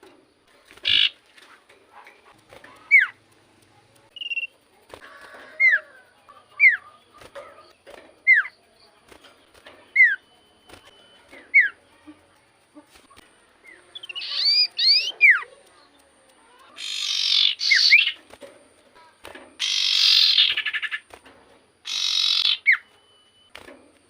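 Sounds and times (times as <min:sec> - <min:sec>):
soft bird chirps: 0:00.1 - 0:24.0
buzzy bird call: 0:00.8 - 0:01.2, 0:12.9 - 0:15.5, 0:16.7 - 0:18.2, 0:19.6 - 0:21.1, 0:21.8 - 0:22.9.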